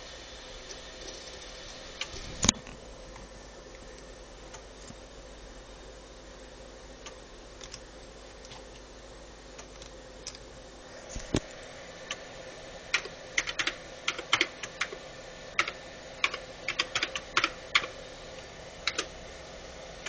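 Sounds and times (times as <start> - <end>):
low electrical hum: 0.0 - 20.0
keys clicking while typing: 12.9 - 15.0, 15.6 - 18.0, 18.8 - 19.2.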